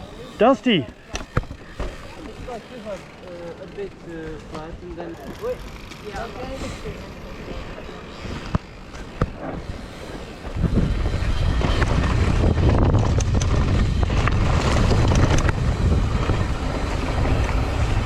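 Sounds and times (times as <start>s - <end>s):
bike rattling over rough ground: 0.0s - 18.0s
wind buffeting microphone: 6.2s - 18.0s.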